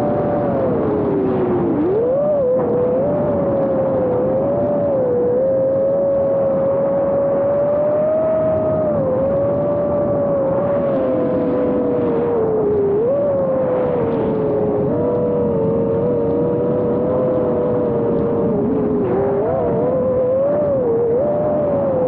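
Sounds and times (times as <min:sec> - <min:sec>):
rush of wind: 0:00.0 - 0:22.0.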